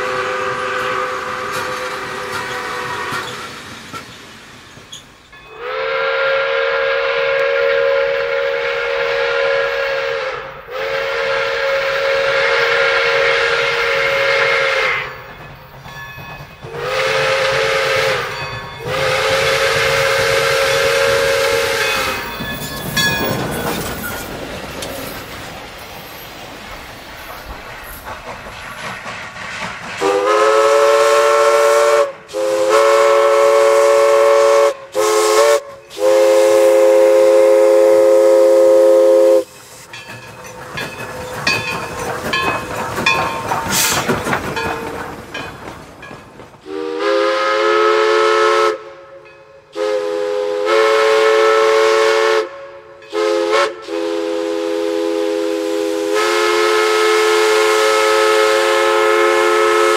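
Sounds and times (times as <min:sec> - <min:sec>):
steam whistle blowing: 0:00.0 - 0:03.6, 0:05.5 - 0:15.3, 0:16.7 - 0:22.4, 0:30.0 - 0:39.7, 0:46.6 - 0:59.9
train noise: 0:00.0 - 0:59.9.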